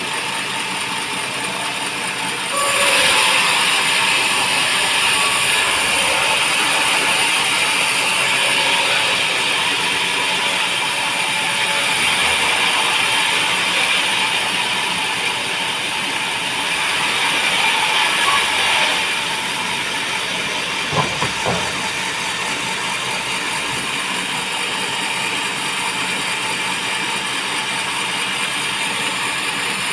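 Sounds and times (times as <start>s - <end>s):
band sawmill running: 0.0s - 29.9s
sharp knocks: 20.9s - 22.1s.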